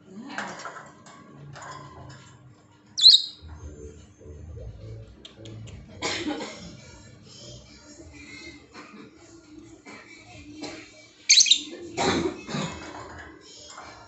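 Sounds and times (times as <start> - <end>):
bird chirp: 3.0 - 3.4, 11.3 - 11.8.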